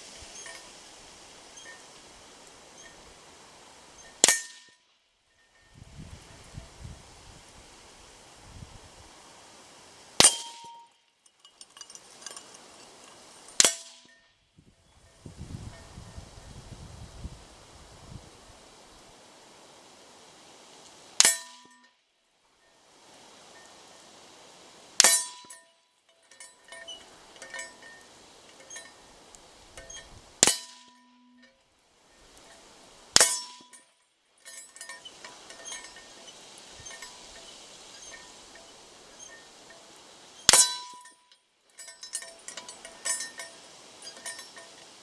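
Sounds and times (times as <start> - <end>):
steel target ringing: 4.0 - 4.7, 10.2 - 11.0, 40.4 - 41.1
light metallic clicks: 10.2 - 14.2, 24.9 - 45.0.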